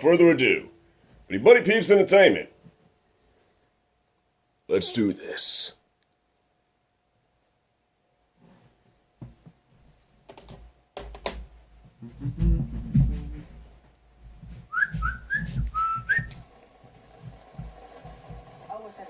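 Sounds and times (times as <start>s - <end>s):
low thumps and clicks: 10.4s - 16.4s
rising whistled notes: 14.7s - 16.4s.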